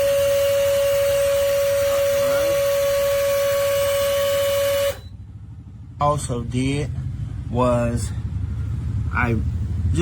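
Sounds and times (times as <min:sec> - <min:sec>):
hydraulic jack motor whining: 0:00.0 - 0:05.2.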